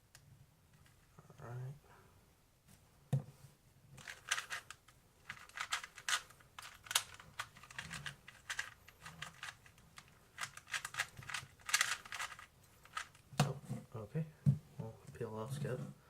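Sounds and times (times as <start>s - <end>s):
speed cube clicking: 4.0s - 13.2s.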